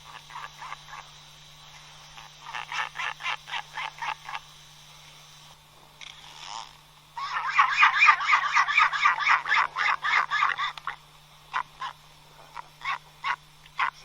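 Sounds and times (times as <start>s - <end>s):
albatross calling in pulsed notes: 7.2s - 12.0s, 12.6s - 14.0s.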